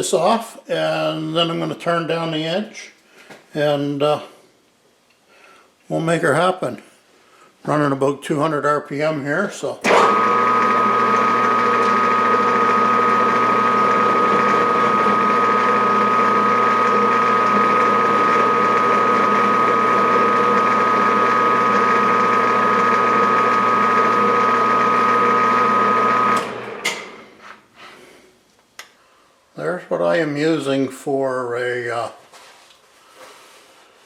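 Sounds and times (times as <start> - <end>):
metal lathe whining: 9.9 - 27.4.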